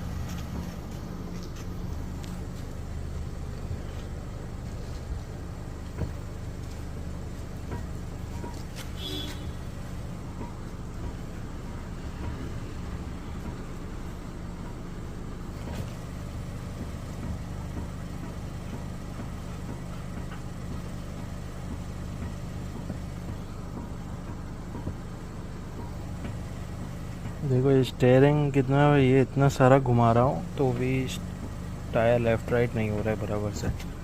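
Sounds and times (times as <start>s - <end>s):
car engine humming: 0.0s - 34.0s.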